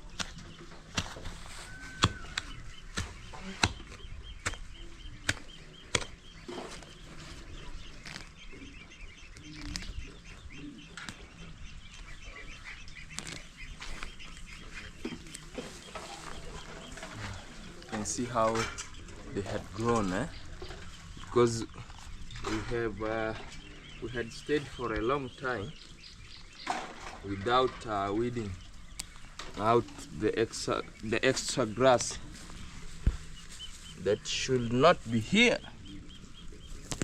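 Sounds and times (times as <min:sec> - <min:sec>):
birds chirping: 0:00.0 - 0:37.0.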